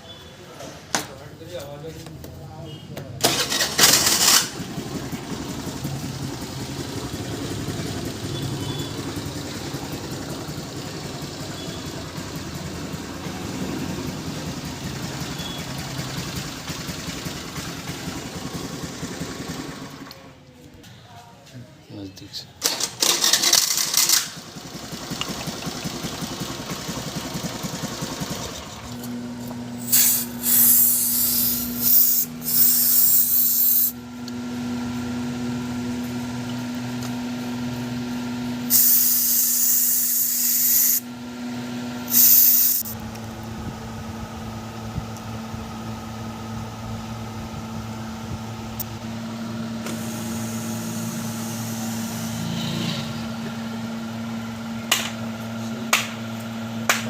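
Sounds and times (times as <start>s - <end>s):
scooter engine idling: 3.3s - 20.5s, 23.1s - 56.9s
hissing air jet bursts: 29.8s - 34.0s, 38.7s - 41.0s, 42.1s - 43.0s, 49.9s - 52.7s.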